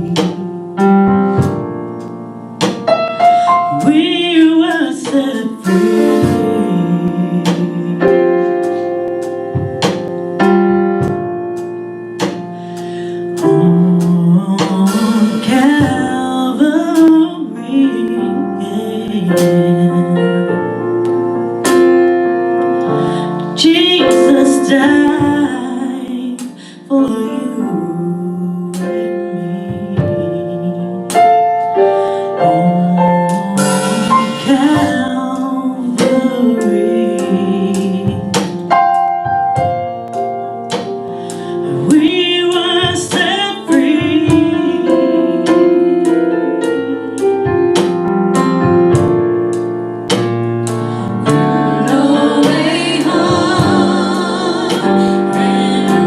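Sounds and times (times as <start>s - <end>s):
piano chords: 0.0s - 56.0s
vocal group singing gospel: 32.5s - 38.6s, 50.8s - 56.0s.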